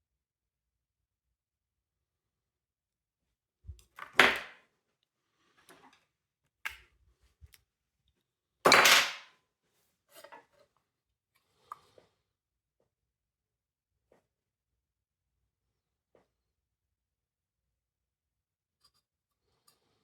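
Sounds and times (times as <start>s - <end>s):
plastic parts knocking and clicking: 3.8s - 4.6s, 8.7s - 9.2s.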